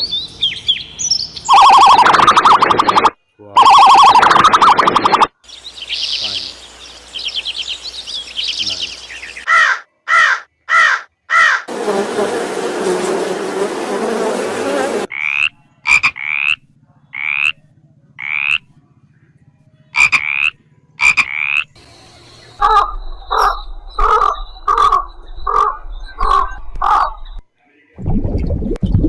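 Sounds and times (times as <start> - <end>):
animal calls: 1.5 - 5.3, 14.8 - 19.1, 19.9 - 21.8, 22.6 - 27.4.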